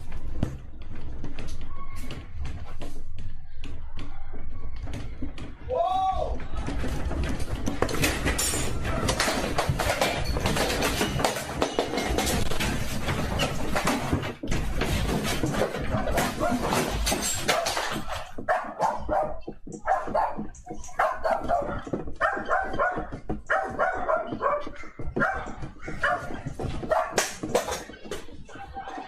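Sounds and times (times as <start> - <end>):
dog barking rapidly: 18.5 - 27.4.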